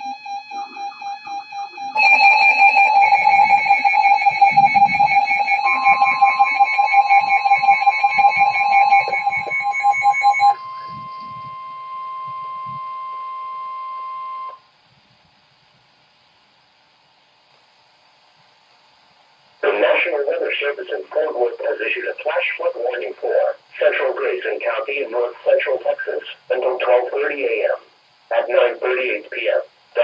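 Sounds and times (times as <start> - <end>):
steady alert tone: 0.0 - 11.3
rapidly pulsing electronic beep: 0.0 - 14.6.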